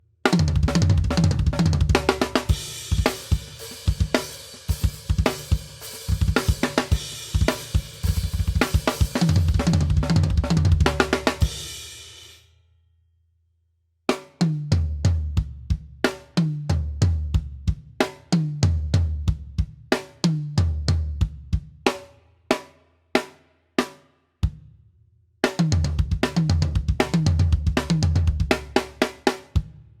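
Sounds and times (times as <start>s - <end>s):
drum kit playing: 0.3s - 12.4s, 25.6s - 29.7s.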